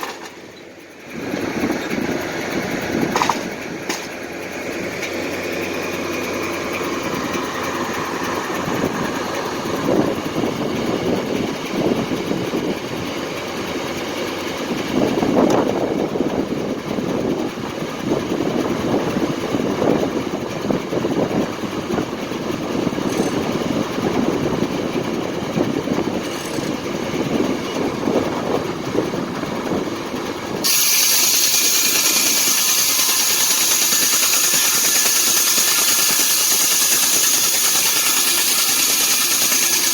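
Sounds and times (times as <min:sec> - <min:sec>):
circular sawmill running: 0:00.0 - 0:39.9
loud steady hiss: 0:30.6 - 0:39.9.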